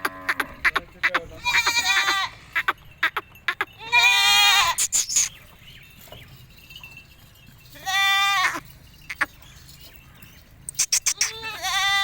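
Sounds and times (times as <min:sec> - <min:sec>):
goat bleating: 0:00.0 - 0:05.3, 0:07.8 - 0:09.3, 0:10.8 - 0:12.0.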